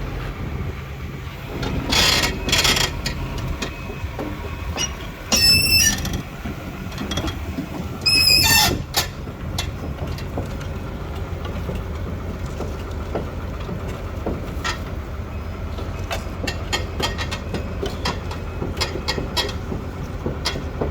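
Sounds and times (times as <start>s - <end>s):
excavator diesel engine humming: 0.0s - 20.9s
high-pitched metallic squeal: 4.8s - 6.2s
sharp metal clanks and knocks: 16.0s - 20.9s.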